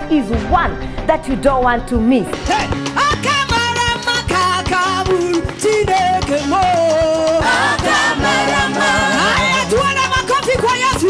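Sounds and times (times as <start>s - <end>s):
steady drum beat: 0.0s - 11.0s
choir singing gospel: 2.3s - 11.0s.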